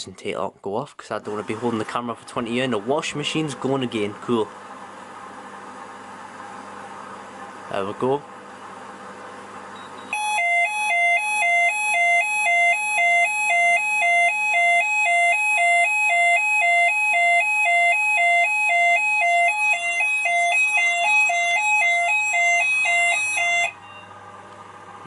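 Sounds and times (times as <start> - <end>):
fire alarm two-tone warble: 10.1 - 24.1.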